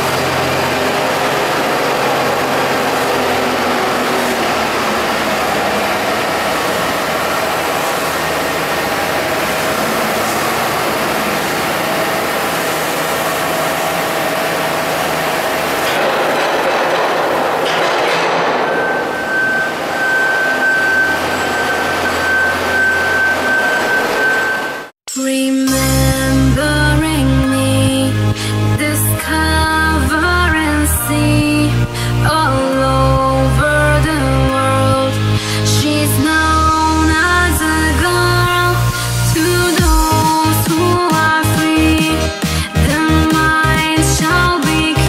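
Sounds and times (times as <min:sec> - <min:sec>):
heavy rolling and rattling: 0:00.0 - 0:24.8
tractor engine running: 0:00.0 - 0:24.9, 0:26.4 - 0:45.0
high-pitched whine: 0:00.0 - 0:26.7.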